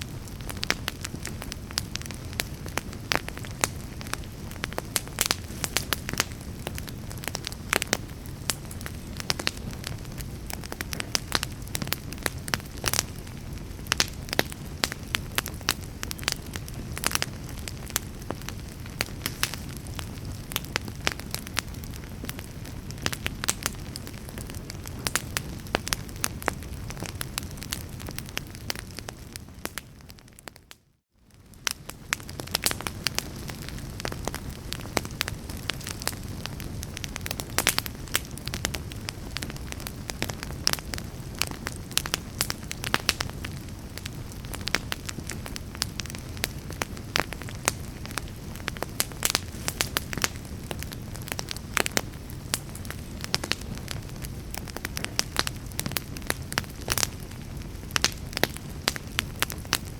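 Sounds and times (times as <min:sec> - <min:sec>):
fire crackling and popping: 0:00.0 - 0:59.9
low rumble of flame: 0:00.0 - 0:59.9.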